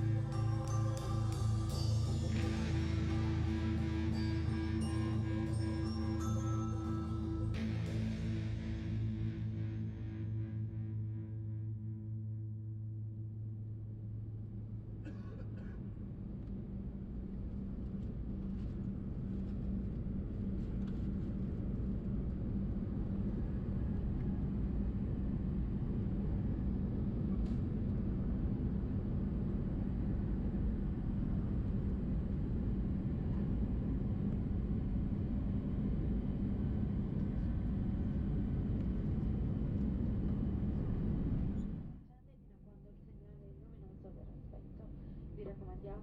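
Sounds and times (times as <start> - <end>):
music track: 0.0 - 8.2
airplane cabin engine rumble: 13.7 - 42.0.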